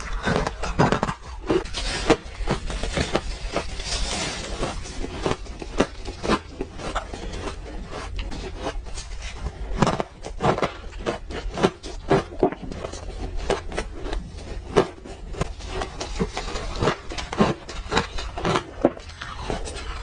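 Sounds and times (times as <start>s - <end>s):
crunchy ice being chewed: 0.0s - 20.0s.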